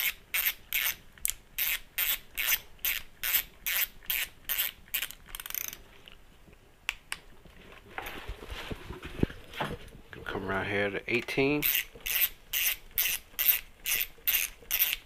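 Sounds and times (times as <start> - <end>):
ratchet wrench clicking: 0.0 - 5.8, 11.6 - 15.0.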